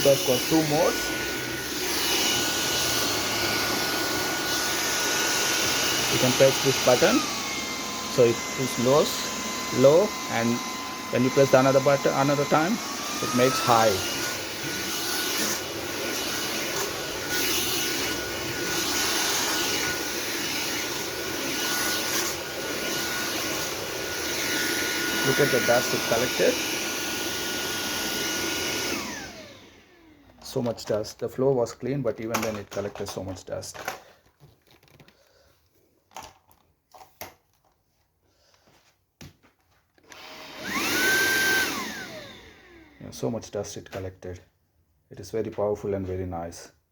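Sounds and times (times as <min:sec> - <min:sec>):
stick vacuum running: 0:00.0 - 0:30.6, 0:40.0 - 0:43.1.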